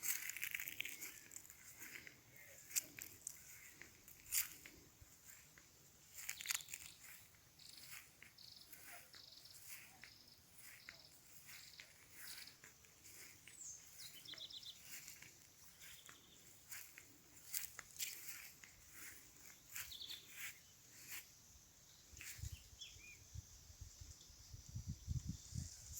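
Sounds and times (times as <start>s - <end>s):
bird chirping: 6.0s - 17.6s, 18.3s - 20.8s.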